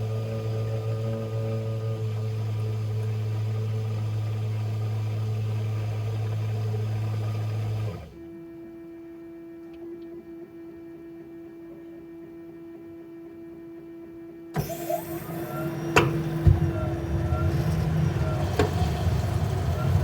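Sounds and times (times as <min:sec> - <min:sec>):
water heater humming: 0:14.6 - 0:20.0.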